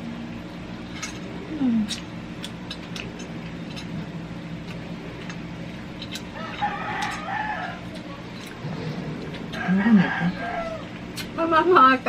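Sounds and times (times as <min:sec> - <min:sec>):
steady low hum: 0:00.0 - 0:12.0
rooster crowing: 0:06.3 - 0:08.2, 0:09.4 - 0:11.0.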